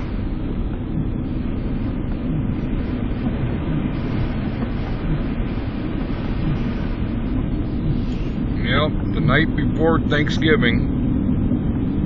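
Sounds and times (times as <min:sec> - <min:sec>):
car engine and tyre rumble: 0:00.0 - 0:12.0.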